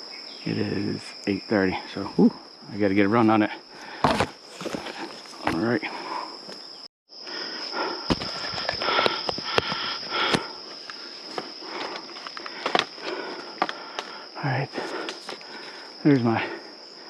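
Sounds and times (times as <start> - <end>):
high-pitched insect drone: 0.0 - 17.0
footsteps: 4.0 - 5.8.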